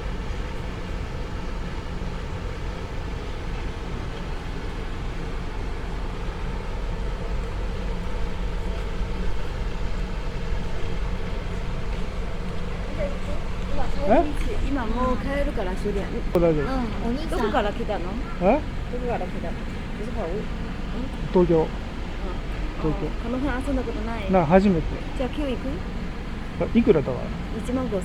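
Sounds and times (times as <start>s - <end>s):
low rumble of traffic: 0.0s - 28.0s.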